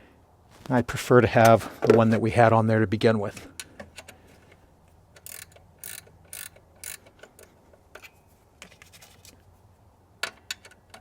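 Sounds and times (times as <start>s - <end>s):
hand ratchet clicking: 5.2s - 8.2s.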